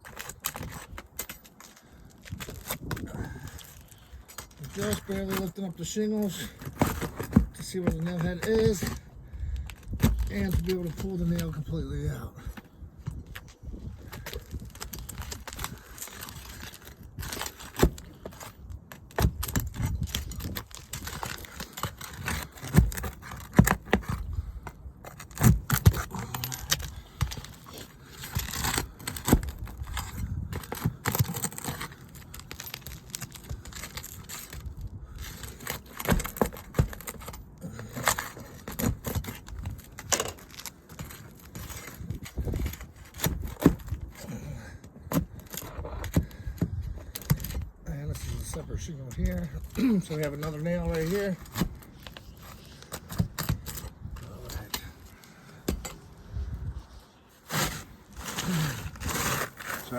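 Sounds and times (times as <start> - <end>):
shingles scraping: 0.0 - 59.9
metal tool prying nails: 25.1 - 34.7.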